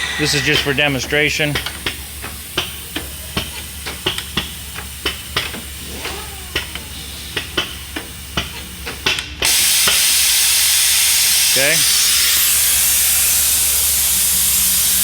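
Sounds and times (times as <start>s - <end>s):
steady machine hum: 0.0s - 3.4s
compressed air hissing: 0.0s - 4.4s, 9.5s - 15.0s.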